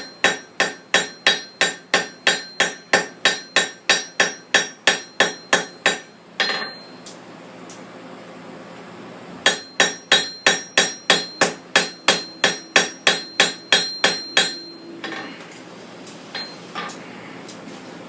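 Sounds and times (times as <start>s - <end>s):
hammer striking steel on anvil: 0.0s - 7.2s, 9.4s - 15.4s, 16.3s - 17.0s.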